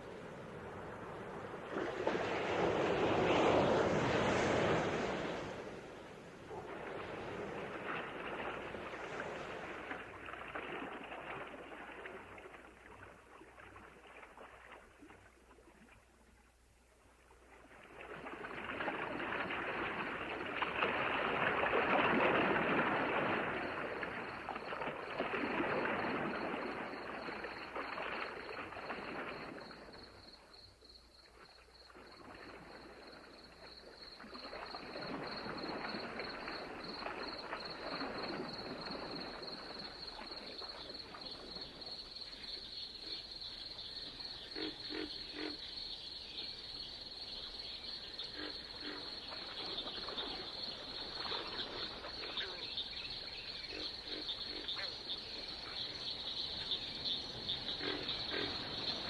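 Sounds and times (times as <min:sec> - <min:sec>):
ocean waves surging: 0:00.0 - 0:10.2
crickets trilling: 0:18.0 - 0:59.0.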